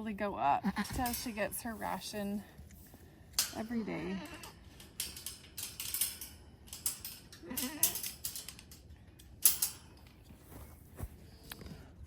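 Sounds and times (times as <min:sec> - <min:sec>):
goat bleating: 0:03.9 - 0:04.6, 0:07.4 - 0:08.0
rustling and clicking: 0:04.4 - 0:12.0.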